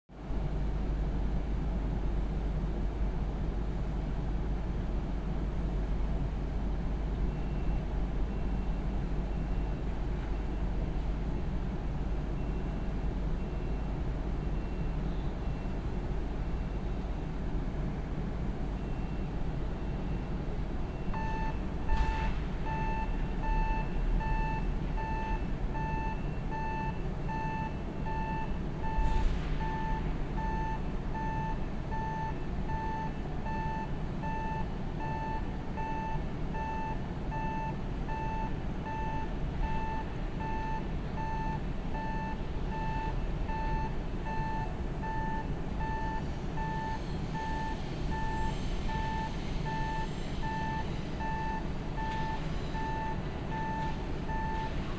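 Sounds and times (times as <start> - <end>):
electronic warning beeps: 18.8 - 54.9.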